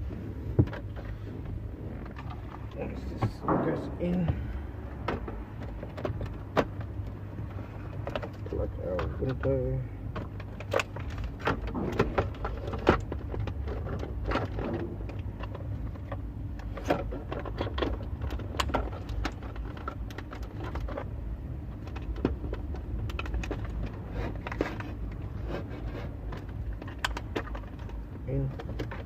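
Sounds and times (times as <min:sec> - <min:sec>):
steady low hum: 0:00.0 - 0:29.0
plastic clicks and rattles: 0:21.8 - 0:25.3, 0:26.3 - 0:29.0.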